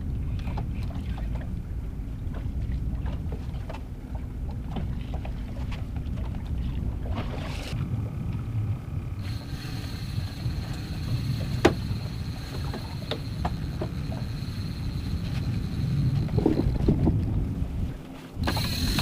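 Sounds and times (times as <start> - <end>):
waves lapping against hull: 0.0 - 19.0
wind on microphone: 0.0 - 19.0
faint high whine: 7.8 - 17.2, 18.4 - 19.0.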